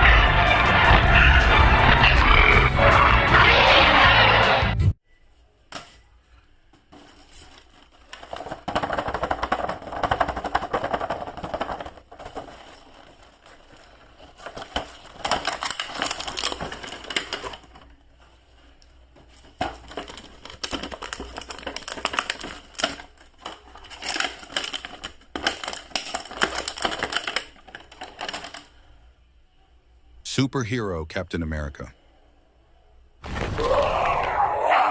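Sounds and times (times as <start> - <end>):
plastic packaging crinkling: 6.9 - 28.9.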